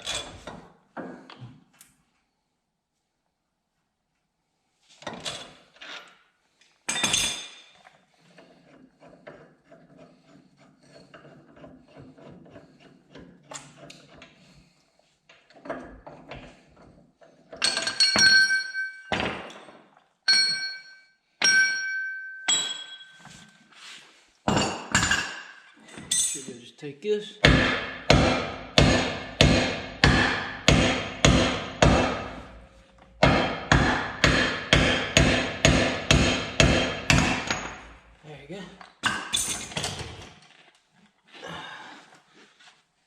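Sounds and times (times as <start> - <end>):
hammer striking metal: 20.3 - 23.2, 27.4 - 38.0.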